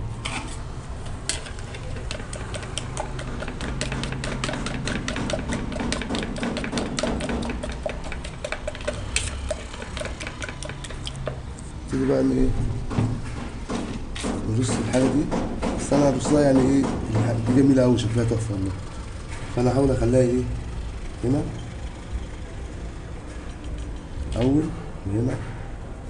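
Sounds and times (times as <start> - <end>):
stirring stick scraping a cup: 0.2 - 12.0.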